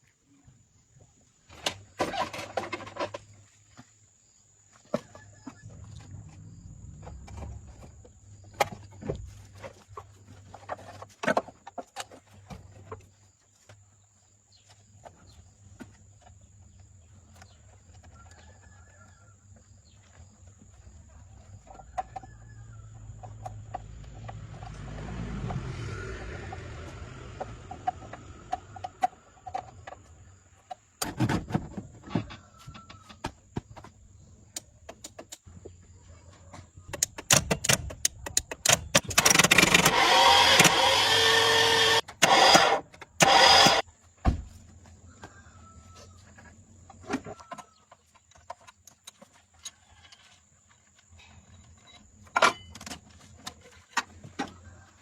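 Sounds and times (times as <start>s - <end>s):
knocks and clicks: 36.9s - 41.2s
car engine cranking and starting: 38.6s - 43.8s.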